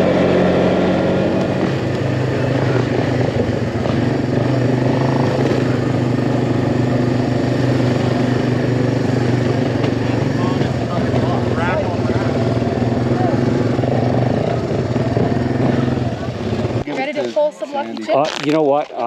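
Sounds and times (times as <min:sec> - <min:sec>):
rumble of riding: 0:00.0 - 0:16.9
quad engine drone: 0:00.0 - 0:17.0.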